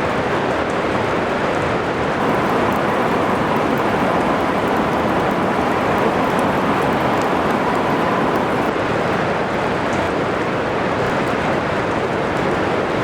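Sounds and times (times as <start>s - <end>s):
heavy rain falling: 2.1s - 13.0s.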